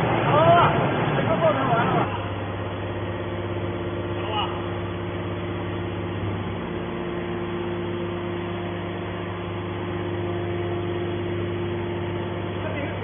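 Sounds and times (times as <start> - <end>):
electric motor and pump humming: 0.0 - 13.0.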